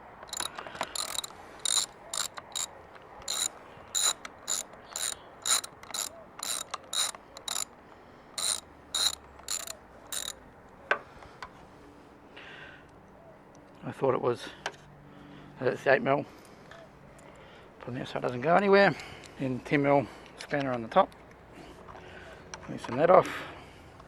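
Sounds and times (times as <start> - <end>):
socket ratchet clicking: 0.0 - 10.4.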